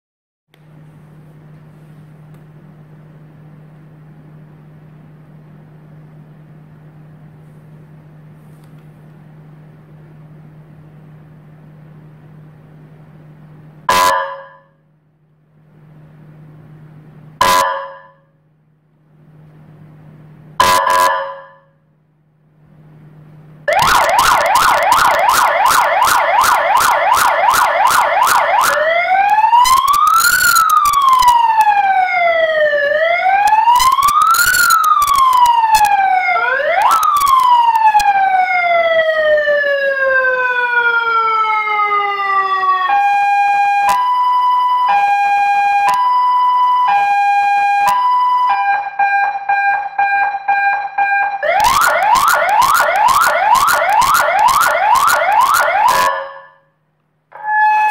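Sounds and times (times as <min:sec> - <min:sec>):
electronic siren: 0:13.9 - 0:14.8, 0:17.4 - 0:18.3, 0:20.6 - 0:21.8, 0:23.7 - 0:57.9.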